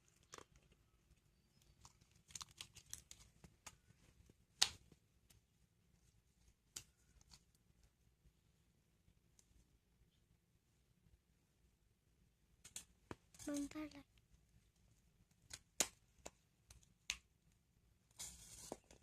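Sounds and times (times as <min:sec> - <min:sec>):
small clicks and rustles: 0:00.0 - 0:08.0.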